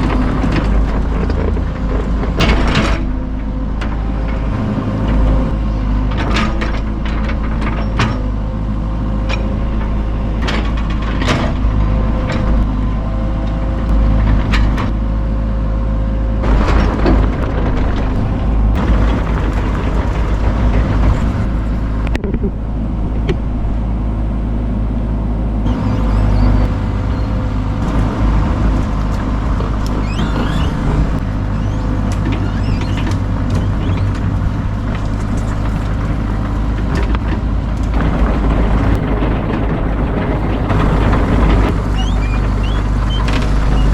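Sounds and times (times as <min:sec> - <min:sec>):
heavy machinery engine running: 0:00.0 - 0:43.9
sharp cracks of wood: 0:16.4 - 0:22.6.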